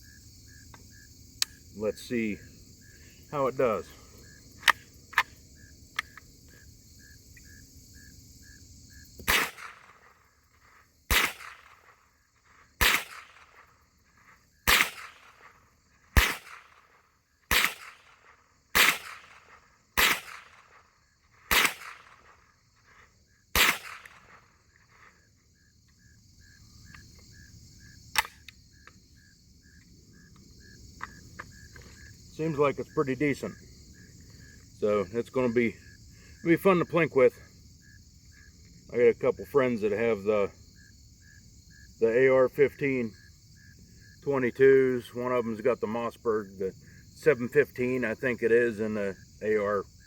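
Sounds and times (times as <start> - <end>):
crickets chirping: 0.0 - 50.0
rifle shots with echo: 9.2 - 10.2, 11.1 - 12.1, 12.8 - 13.7, 14.6 - 24.6
sharp click: 28.1 - 29.0.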